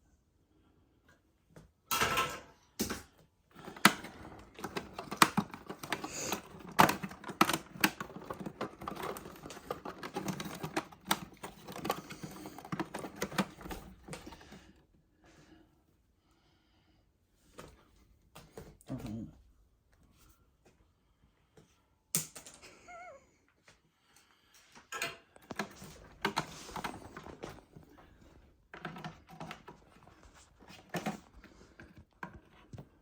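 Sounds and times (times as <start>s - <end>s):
plastic parts clicking and snapping: 3.6s - 14.5s, 24.9s - 28.1s.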